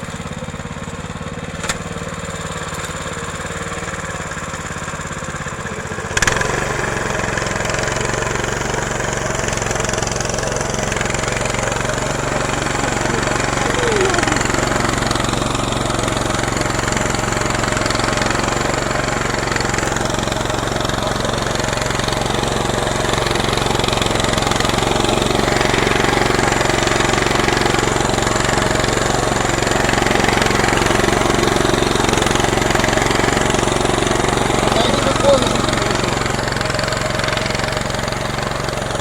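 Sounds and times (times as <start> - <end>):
tractor engine running: 0.0 - 39.0.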